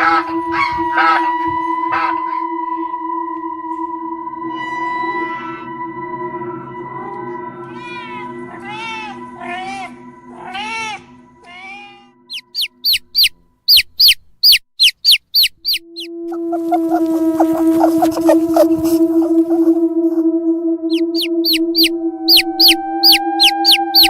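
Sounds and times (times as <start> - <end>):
background music drone: 0.0 - 13.8, 15.6 - 24.0
high-pitched chirps: 12.3 - 20.2, 20.9 - 24.0.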